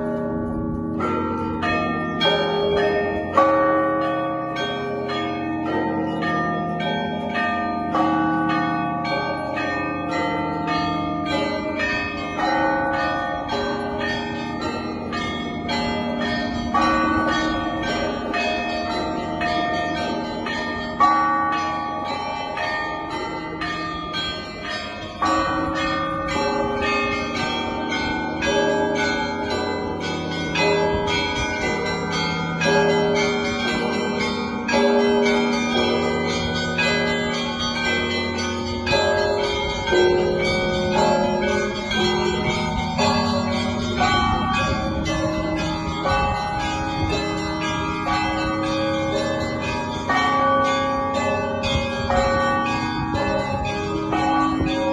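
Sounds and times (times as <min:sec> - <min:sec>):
church bells ringing a peal: 0:00.0 - 0:54.9
heavy bell strokes: 0:00.0 - 0:54.9.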